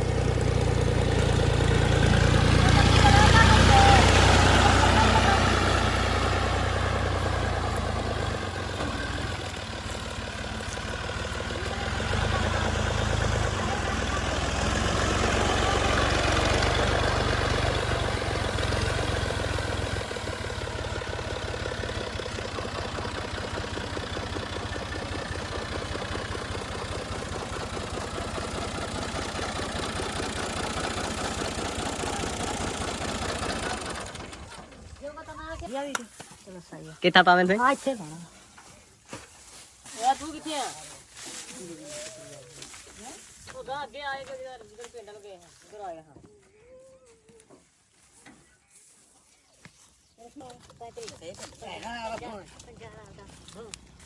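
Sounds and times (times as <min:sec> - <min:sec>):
heavy diesel engine running: 0:00.0 - 0:35.6.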